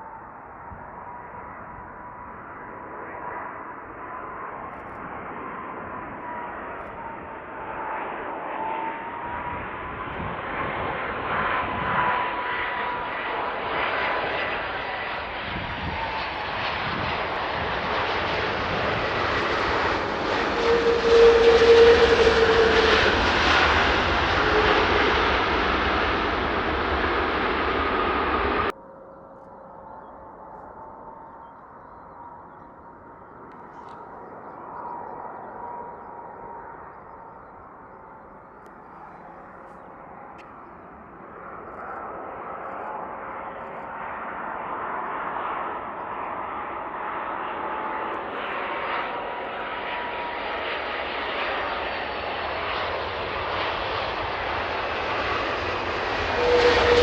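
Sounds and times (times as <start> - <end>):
jet airliner engines whining: 0.0 - 57.0.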